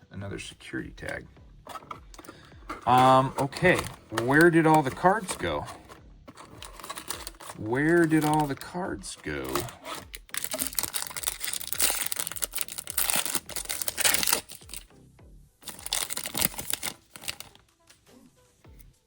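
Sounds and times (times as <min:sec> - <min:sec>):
music: 0:00.0 - 0:19.0
foil wrapper crinkling and tearing: 0:02.2 - 0:14.9, 0:15.6 - 0:17.6.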